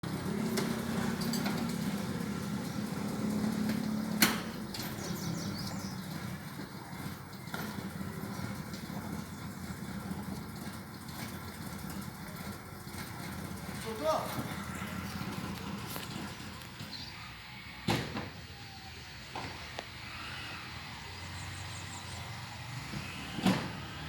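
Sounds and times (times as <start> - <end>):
car engine idling: 0.0 - 17.2.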